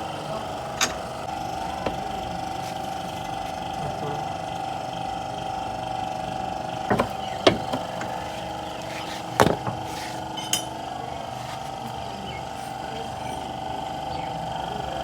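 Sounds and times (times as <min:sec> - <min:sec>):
steady background hum: 0:00.0 - 0:15.0
hand tools clinking on car parts: 0:06.8 - 0:10.9.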